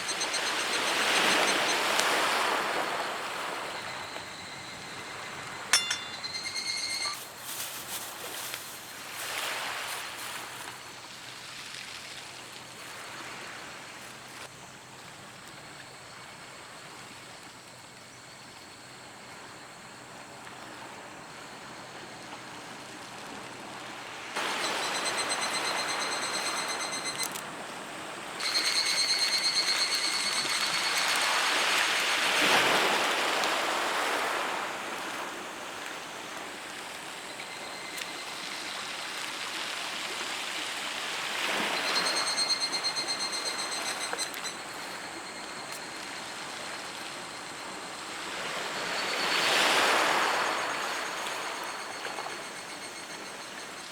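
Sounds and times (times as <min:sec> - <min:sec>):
waves washing onto beach: 0:00.0 - 0:05.7, 0:07.4 - 0:14.5, 0:20.2 - 0:53.9
high pulsing buzz: 0:28.4 - 0:31.4.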